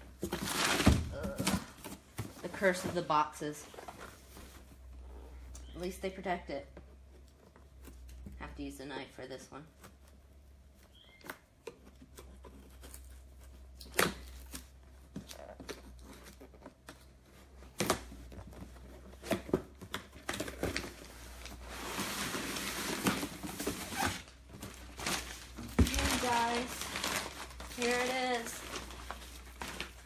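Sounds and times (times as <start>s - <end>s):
packing material rustling: 9.9s - 30.0s.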